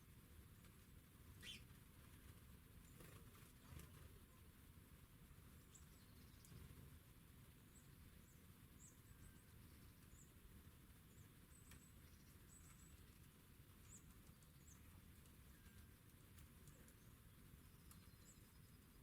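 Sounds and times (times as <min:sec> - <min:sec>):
low background rumble: 0:00.0 - 0:19.0
songbirds chirping: 0:00.0 - 0:19.0.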